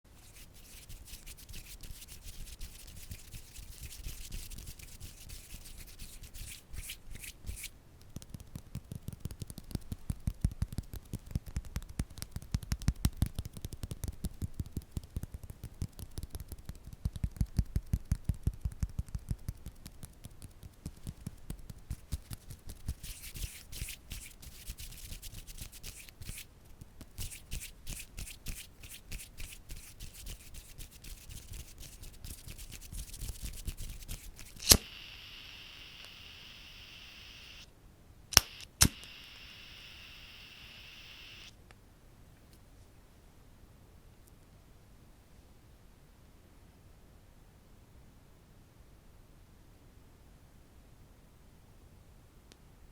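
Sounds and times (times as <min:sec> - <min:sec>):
fast hissy scratching: 0:00.1 - 0:37.6
rapid tapping: 0:00.2 - 0:34.6.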